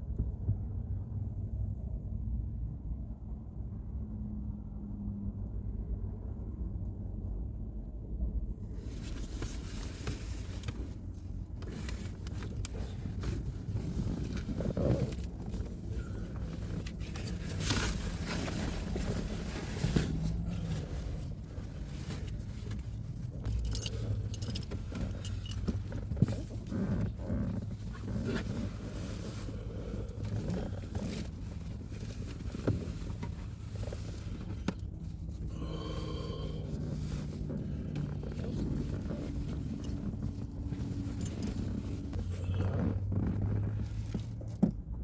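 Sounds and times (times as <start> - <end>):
steady low hum: 7.2 - 44.2
rustling and jingling handling: 11.7 - 35.5, 36.8 - 44.5.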